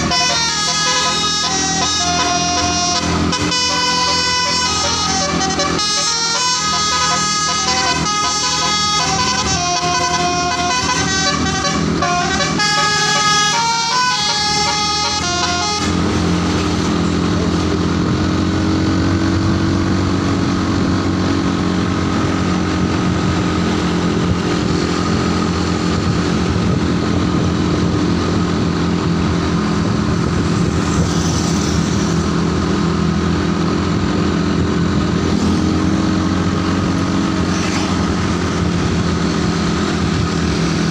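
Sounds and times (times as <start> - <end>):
musical bus horn tune: 0.0 - 16.9
bus engine running: 0.0 - 40.9.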